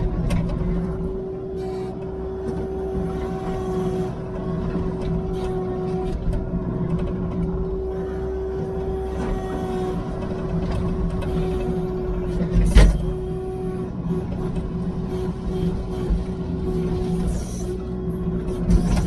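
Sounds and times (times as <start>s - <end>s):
heavy machine engine running: 0.0s - 19.0s.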